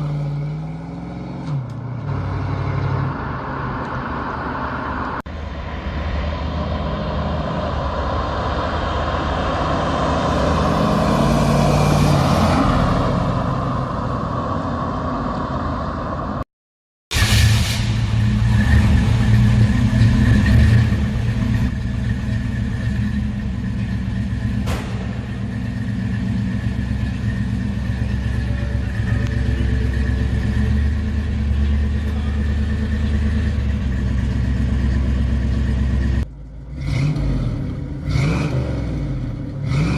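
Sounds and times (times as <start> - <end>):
car engine revving and idling: 17.2 - 39.9.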